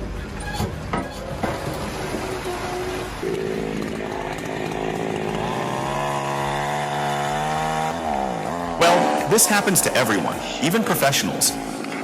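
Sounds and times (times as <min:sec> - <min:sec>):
chainsaw engine revving: 0:03.2 - 0:10.8.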